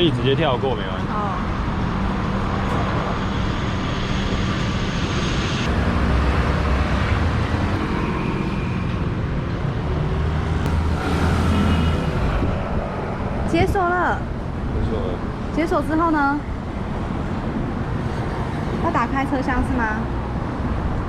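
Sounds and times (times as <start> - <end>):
passing vehicles rumbling: 0.0 - 21.0.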